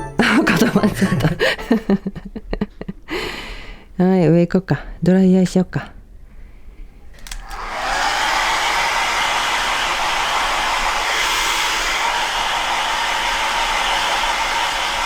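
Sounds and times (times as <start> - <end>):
hair dryer running: 7.2 - 15.0.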